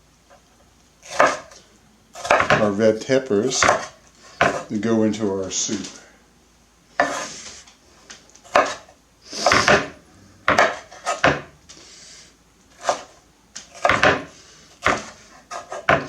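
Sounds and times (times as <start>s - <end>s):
knife chopping on cutting board: 1.0s - 1.6s, 2.2s - 2.8s, 3.6s - 4.7s, 7.0s - 7.3s, 8.5s - 11.6s, 12.8s - 13.1s, 13.7s - 16.0s.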